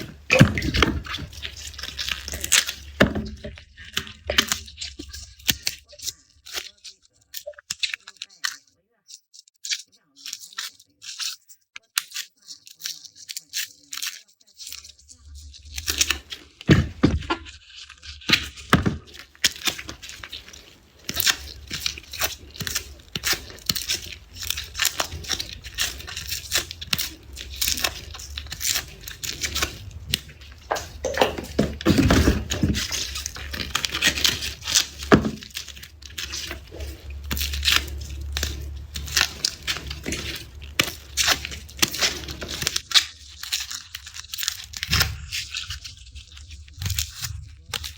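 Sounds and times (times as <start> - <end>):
garlic skins crackling: 0.0 - 6.7, 12.6 - 47.9.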